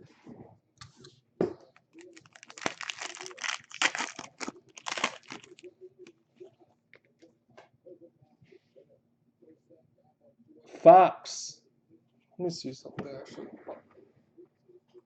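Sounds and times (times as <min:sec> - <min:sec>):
foil wrappers crinkling and tearing: 0:01.8 - 0:05.6.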